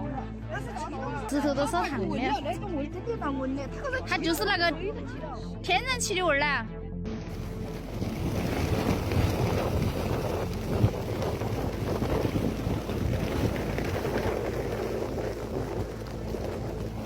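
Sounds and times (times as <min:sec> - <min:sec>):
wind buffeting microphone: 0:07.3 - 0:17.0.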